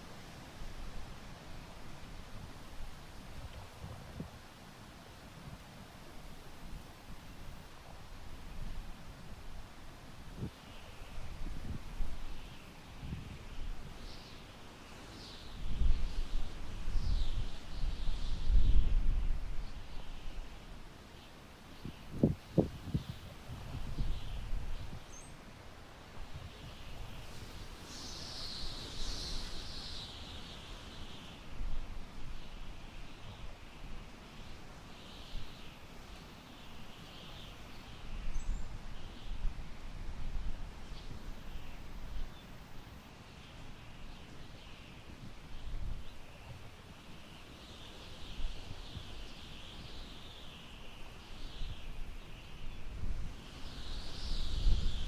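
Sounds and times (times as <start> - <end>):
wind rumble on microphone: 0.0 - 4.5, 5.3 - 14.4, 15.2 - 20.9, 21.8 - 25.3, 51.0 - 55.0
wind rustling through grass: 0.0 - 55.0.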